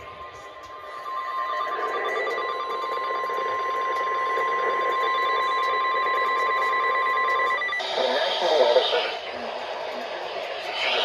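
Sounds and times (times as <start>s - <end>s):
steady alarm tone: 0.0s - 11.0s
radio hiss: 7.8s - 11.0s.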